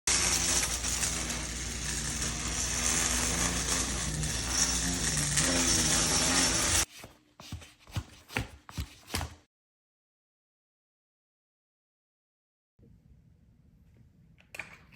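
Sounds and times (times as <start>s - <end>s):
walker feet scraping floor: 0.1s - 9.4s.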